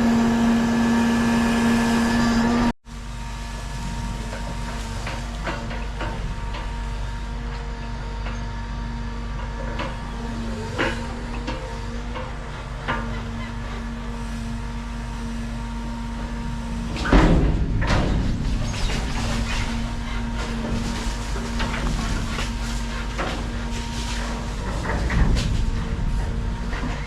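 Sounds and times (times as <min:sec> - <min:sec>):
engine running: 0:00.0 - 0:27.0
sharp knocks and clatter: 0:17.0 - 0:27.0.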